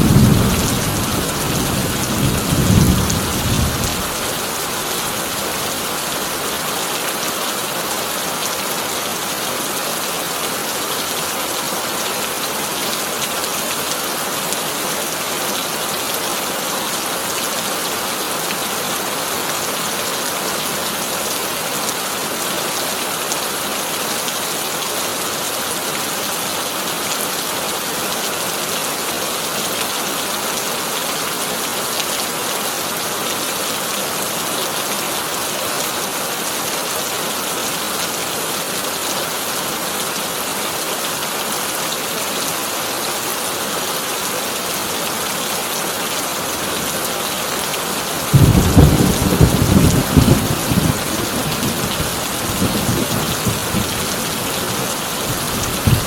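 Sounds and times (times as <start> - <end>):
heavy rain on a tin roof: 0.0 - 56.0
thunder rumble: 48.3 - 54.5, 55.3 - 56.0.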